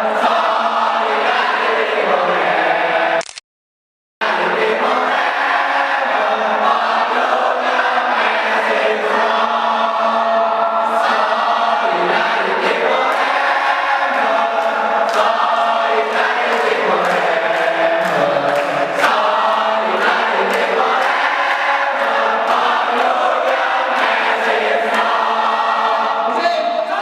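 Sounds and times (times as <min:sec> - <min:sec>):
choir chanting: 0:00.0 - 0:03.2, 0:04.2 - 0:27.0.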